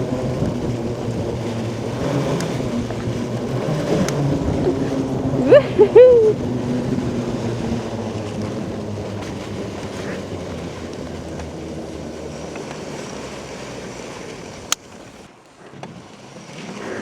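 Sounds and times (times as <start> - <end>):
wind rush: 0.0 - 12.6
electric vehicle motor hum: 0.0 - 17.0
high-pitched cries: 5.4 - 6.4.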